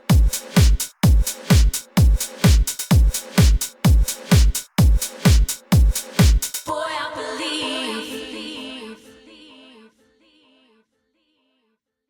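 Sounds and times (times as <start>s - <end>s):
dance track heavy beat: 0.0s - 6.7s.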